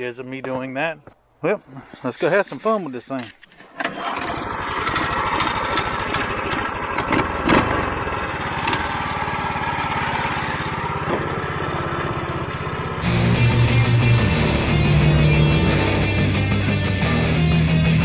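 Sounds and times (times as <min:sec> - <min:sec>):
small engine running steadily: 0:03.9 - 0:17.8.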